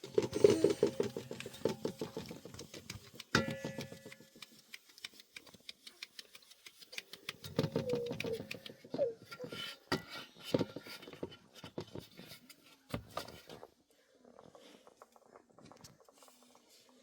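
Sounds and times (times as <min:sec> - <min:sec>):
rapid tapping and clicking: 0:00.0 - 0:09.0.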